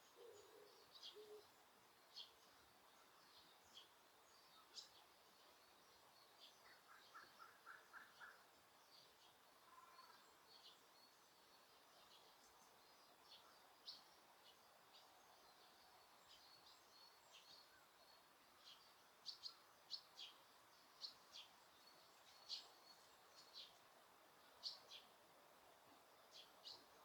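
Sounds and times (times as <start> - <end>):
small birds chirping: 0.0 - 25.3
faint background hiss: 0.0 - 27.0.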